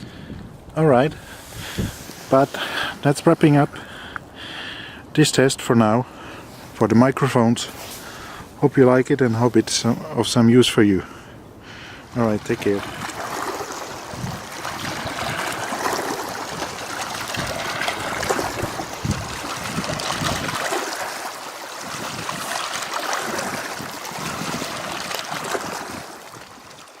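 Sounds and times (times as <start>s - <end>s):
wind buffeting microphone: 0.0s - 2.5s, 11.5s - 26.8s
small waves lapping shore: 11.5s - 27.0s.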